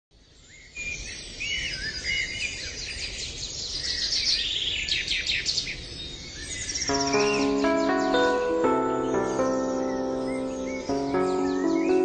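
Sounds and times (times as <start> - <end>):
songbirds whistling and chirping: 0.4 - 7.4, 9.7 - 12.0.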